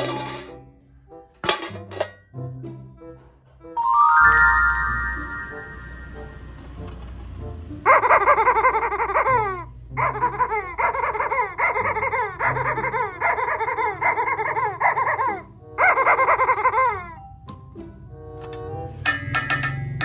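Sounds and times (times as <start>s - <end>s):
baby giggling: 7.9s - 17.2s.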